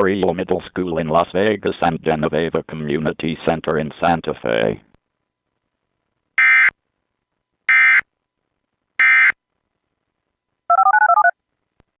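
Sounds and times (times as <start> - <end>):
touch-tone tones: 10.7 - 11.4.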